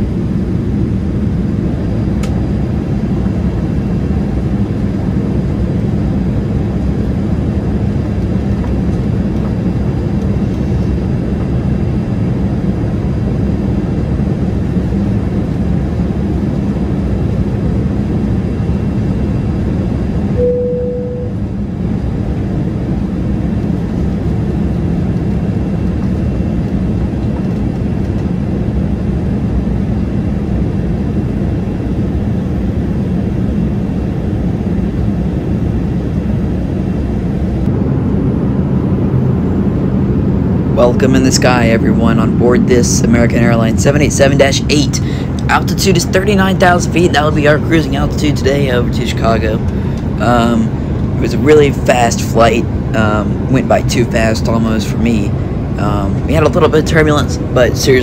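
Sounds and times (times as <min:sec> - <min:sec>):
jet engine cabin noise: 0:00.0 - 0:58.0
short tone: 0:20.4 - 0:21.6.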